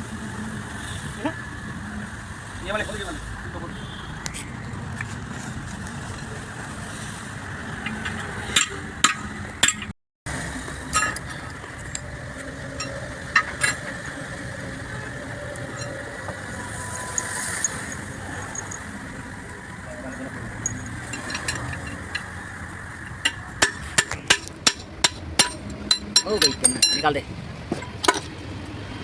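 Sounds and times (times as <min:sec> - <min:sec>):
metallic clinks of tools: 0:17.0 - 0:18.9, 0:20.1 - 0:22.3, 0:25.4 - 0:27.2.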